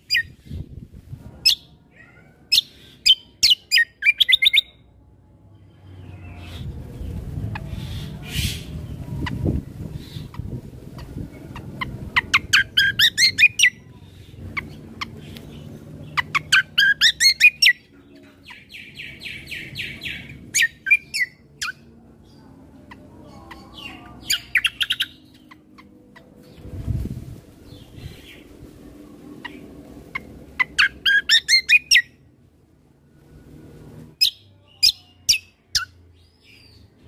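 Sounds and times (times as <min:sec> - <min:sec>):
faint low rumble: 0:00.0 - 0:02.6, 0:04.6 - 0:17.2, 0:17.8 - 0:31.1
bird singing rapid chirps: 0:02.5 - 0:04.8, 0:07.7 - 0:26.7, 0:30.2 - 0:32.2.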